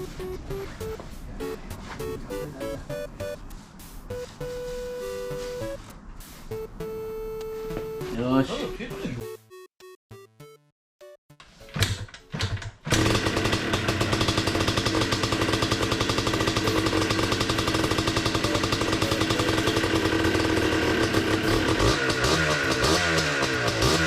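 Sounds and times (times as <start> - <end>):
music: 0.0 - 12.6, 18.4 - 20.9
two-stroke engine running: 12.9 - 24.0.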